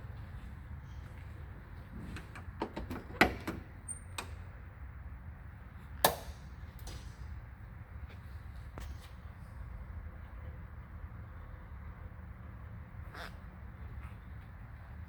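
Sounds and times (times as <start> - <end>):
light clicks and knocks: 2.0 - 4.4.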